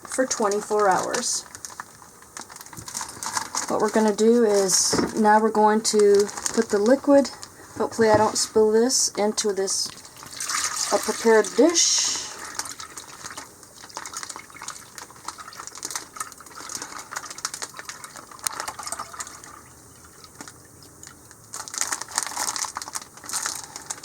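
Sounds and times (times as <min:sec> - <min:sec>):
plastic bag crinkling: 0:00.0 - 0:08.6, 0:09.8 - 0:24.0
liquid splashing and trickling: 0:09.9 - 0:21.3.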